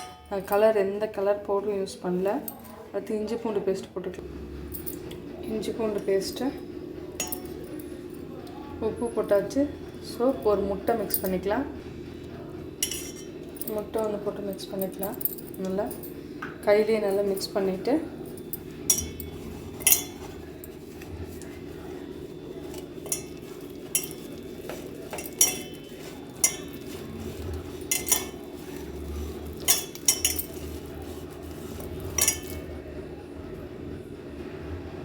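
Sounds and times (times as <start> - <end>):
clinks and knocks against vessel: 7.2 - 8.0, 12.8 - 13.8, 18.2 - 32.7.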